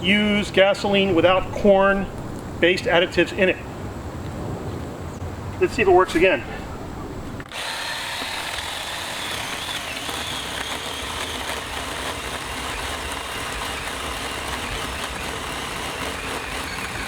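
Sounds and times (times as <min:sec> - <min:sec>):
cordless chainsaw running: 0:07.4 - 0:17.0.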